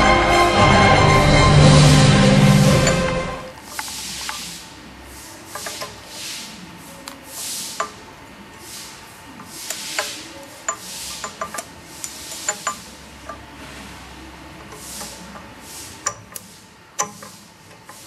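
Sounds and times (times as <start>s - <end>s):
hand rasping strokes on workpiece: 5.3s - 14.0s.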